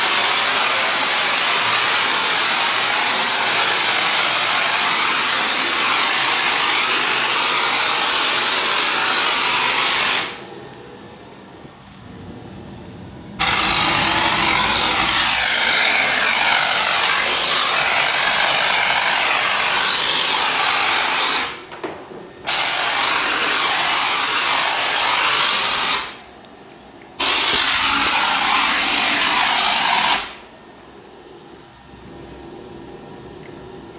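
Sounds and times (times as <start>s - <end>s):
foam gun hissing air: 0.0s - 10.4s, 13.4s - 21.7s, 22.5s - 26.2s, 27.2s - 30.4s.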